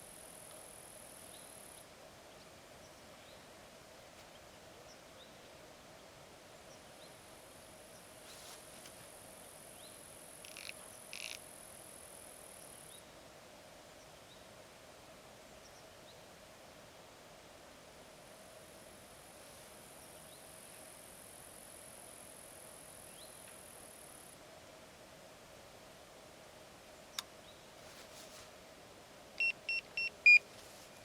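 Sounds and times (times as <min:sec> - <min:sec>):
insect trilling: 0:10.4 - 0:11.4.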